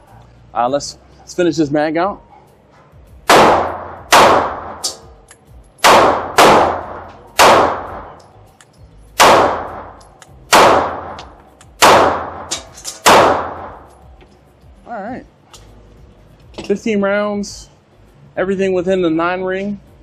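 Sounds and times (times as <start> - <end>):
faint gunshots: 3.3 - 5.0, 5.8 - 8.2, 9.2 - 11.2, 11.8 - 13.8
pistol shots with ringing echo: 3.3 - 8.2, 9.2 - 13.9.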